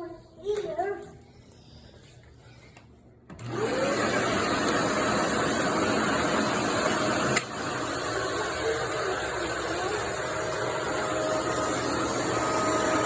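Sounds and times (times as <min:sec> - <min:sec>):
vacuum cleaner motor whine: 0:03.3 - 0:13.0.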